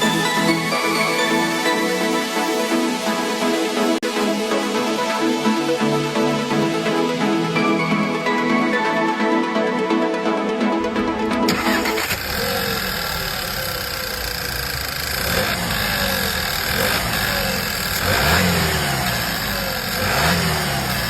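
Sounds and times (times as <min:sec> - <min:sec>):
car engine idling and revving: 0:11.5 - 0:21.0.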